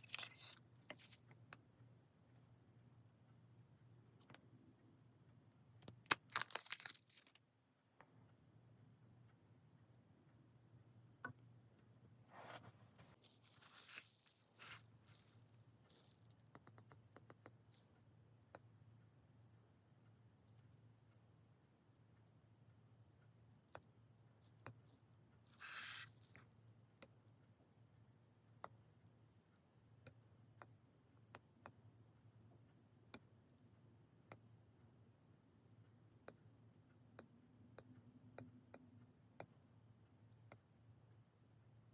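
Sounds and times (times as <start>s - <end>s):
low room hum: 0.0s - 41.9s
packaging rustling and tearing: 6.1s - 7.4s, 12.5s - 16.2s.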